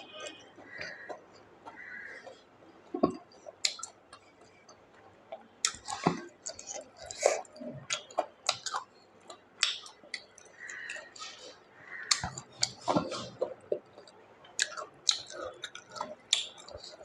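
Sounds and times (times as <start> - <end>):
person chewing food: 0.0 - 17.0.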